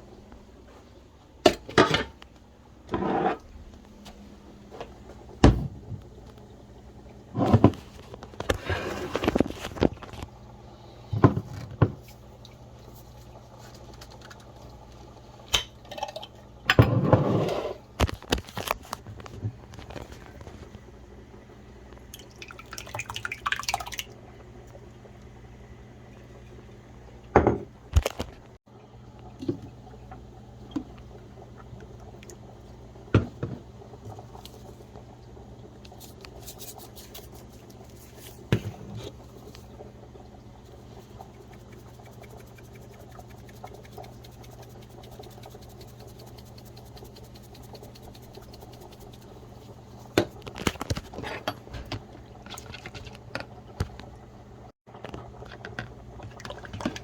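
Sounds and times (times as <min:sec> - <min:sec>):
steady low hum: 0:24.1 - 0:52.4.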